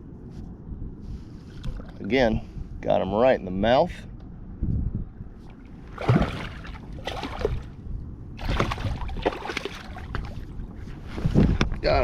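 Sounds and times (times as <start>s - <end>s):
water splashing around a kayak: 5.6s - 7.8s, 8.4s - 11.2s.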